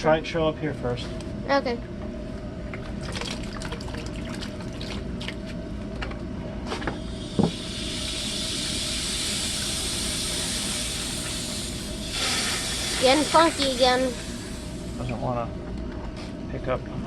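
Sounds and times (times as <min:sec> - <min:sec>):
air hissing through a hose: 0:07.0 - 0:15.0.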